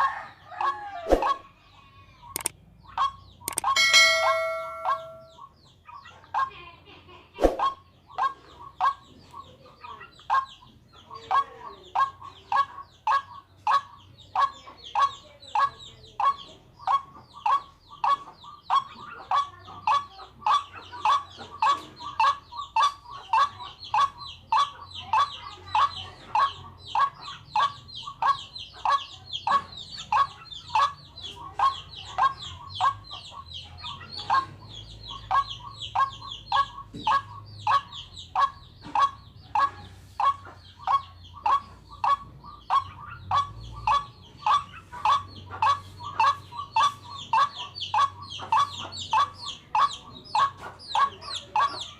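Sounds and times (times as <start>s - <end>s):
waterhen calling harsh notes: 3.6s - 5.5s.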